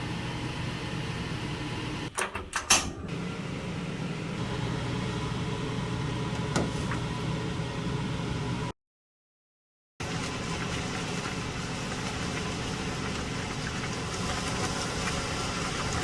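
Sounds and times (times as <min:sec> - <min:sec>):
steady mechanical motor hum: 0:00.0 - 0:08.7.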